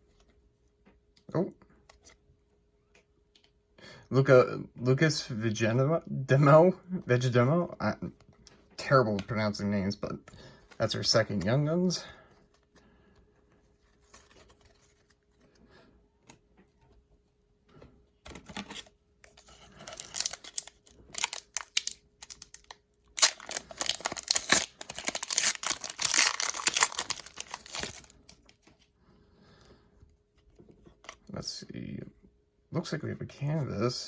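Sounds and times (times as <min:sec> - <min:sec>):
foil wrapper crinkling: 0:19.3 - 0:28.6.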